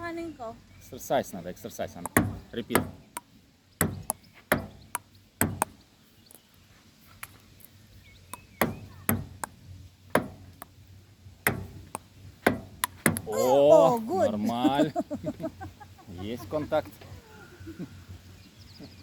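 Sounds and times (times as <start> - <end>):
table tennis ball hits: 2.0 - 5.8, 8.4 - 9.6, 10.2 - 10.7, 11.5 - 13.3.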